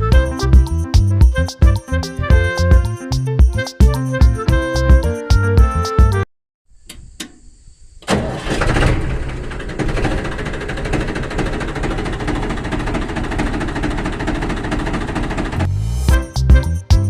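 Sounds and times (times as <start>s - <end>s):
small engine chattering: 8.1s - 15.7s.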